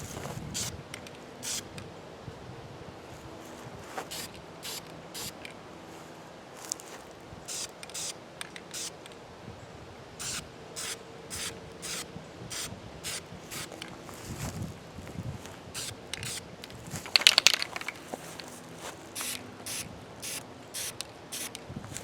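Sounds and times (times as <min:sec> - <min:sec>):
spray paint hissing in short squirts: 0:01.4 - 0:01.7, 0:04.1 - 0:05.4, 0:07.5 - 0:08.9, 0:10.2 - 0:13.8, 0:15.8 - 0:16.4, 0:19.2 - 0:21.6.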